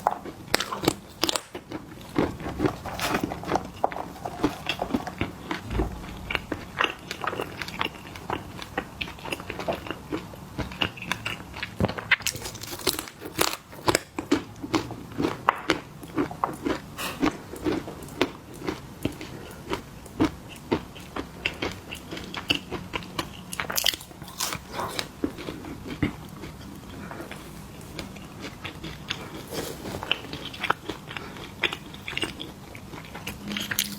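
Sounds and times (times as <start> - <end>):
crunchy snacks being chewed: 0.0 - 33.9.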